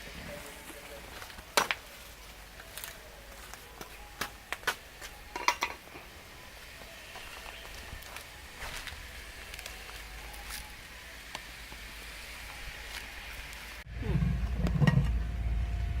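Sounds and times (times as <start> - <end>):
utensils clinking against dishes: 5.3 - 6.1.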